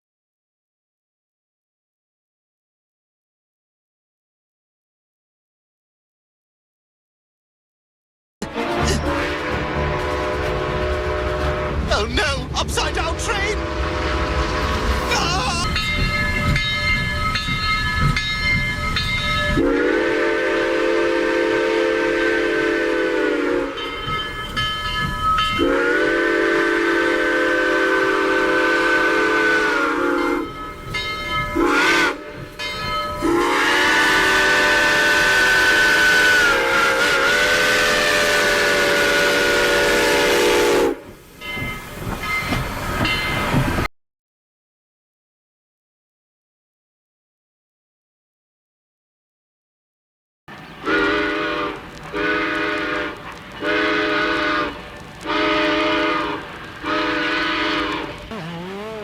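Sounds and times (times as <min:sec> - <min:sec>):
low rumble of moving train: 0:08.4 - 0:43.9, 0:50.5 - 0:59.0
steam train whistle blowing: 0:08.6 - 0:11.9, 0:13.5 - 0:15.4, 0:19.5 - 0:24.0, 0:25.5 - 0:30.6, 0:31.5 - 0:41.2, 0:50.8 - 0:59.0.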